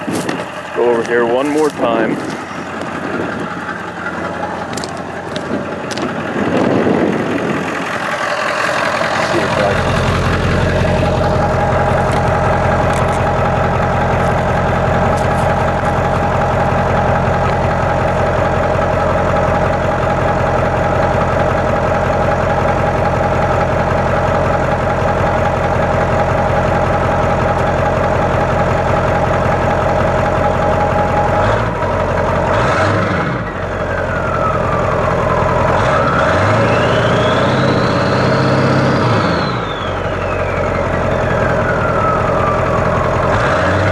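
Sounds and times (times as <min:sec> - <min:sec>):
diesel engine idling and revving: 0:00.0 - 0:43.9
turbo whistle: 0:36.0 - 0:41.9.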